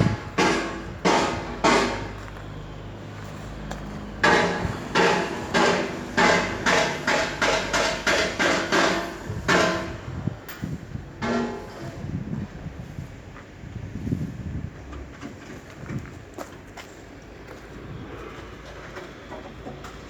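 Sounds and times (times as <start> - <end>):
sharp ringing knocks: 0.0 - 2.2, 4.2 - 10.0.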